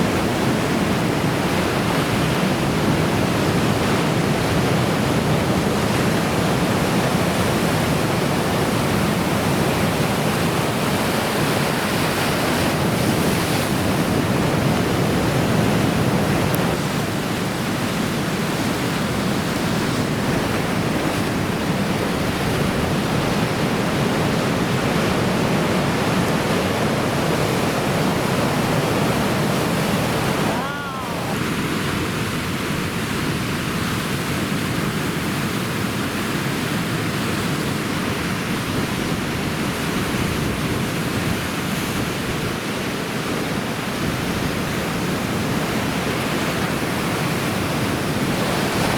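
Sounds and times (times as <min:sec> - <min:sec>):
heavy surf breaking: 0:21.0 - 0:33.8.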